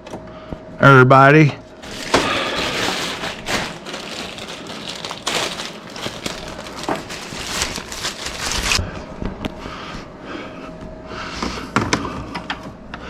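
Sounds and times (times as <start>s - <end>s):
hand handling crinkling and scraping: 1.7s - 8.8s.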